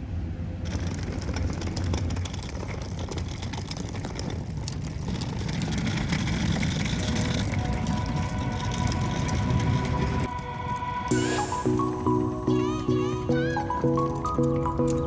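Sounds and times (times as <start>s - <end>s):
road noise: 0.0s - 15.0s
small rattles: 0.6s - 11.1s.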